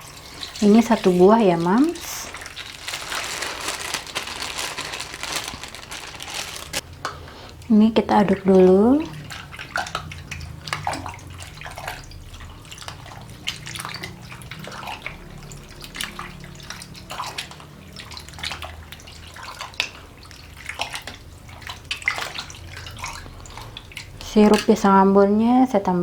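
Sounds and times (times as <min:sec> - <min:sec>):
liquid sloshing and splashing: 0:00.0 - 0:06.8.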